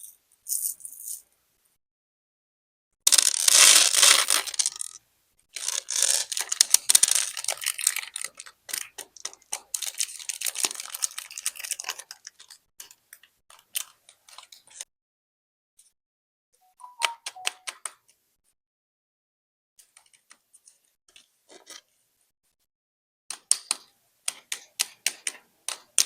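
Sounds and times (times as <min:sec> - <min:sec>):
hard candies pouring and clattering: 0:03.1 - 0:05.0, 0:05.6 - 0:12.6.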